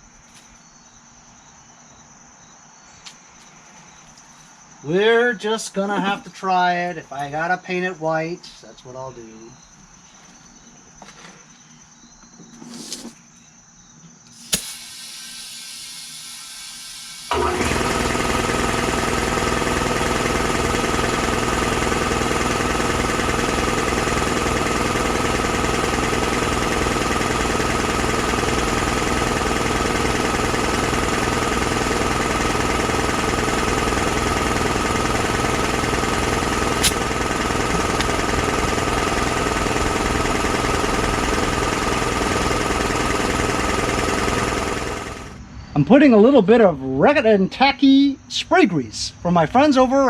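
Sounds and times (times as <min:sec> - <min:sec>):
motor machine pulsing: 0:14.3 - 0:45.4
sharp click: 0:36.8 - 0:37.0.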